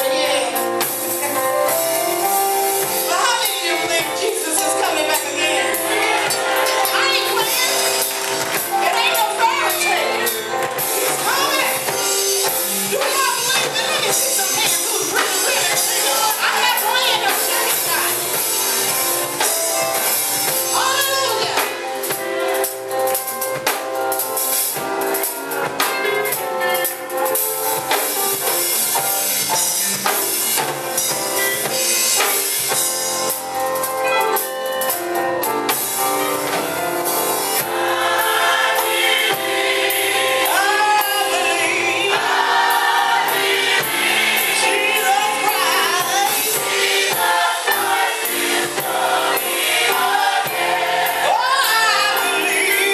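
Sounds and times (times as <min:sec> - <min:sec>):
gospel choir singing: 0:00.0 - 0:23.7, 0:35.7 - 0:52.9.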